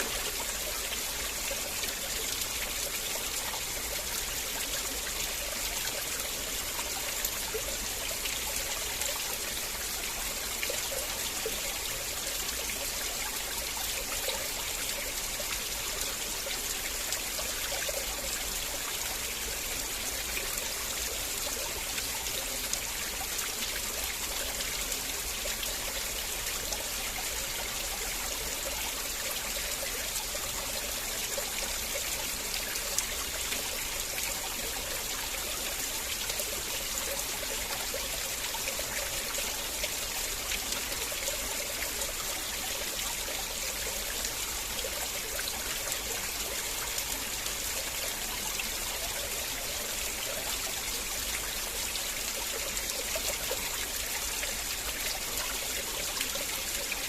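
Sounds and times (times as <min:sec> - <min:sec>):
river water rushing: 0:00.0 - 0:02.8
water trickling and splashing: 0:00.0 - 0:57.0.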